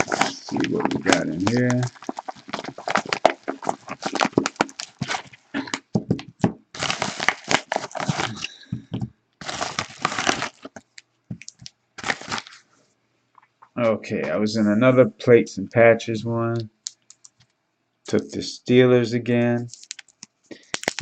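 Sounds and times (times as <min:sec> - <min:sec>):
package packaging tearing: 0:00.0 - 0:05.8, 0:06.7 - 0:08.5, 0:09.4 - 0:12.6, 0:19.7 - 0:21.0
packaging rustling: 0:00.0 - 0:12.6, 0:19.7 - 0:21.0.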